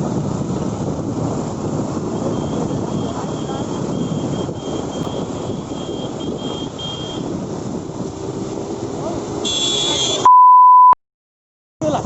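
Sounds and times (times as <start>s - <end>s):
wind buffeting microphone: 0.0s - 9.4s
motorcycle riding: 0.0s - 10.3s
loud steady test-tone beep: 10.2s - 11.0s.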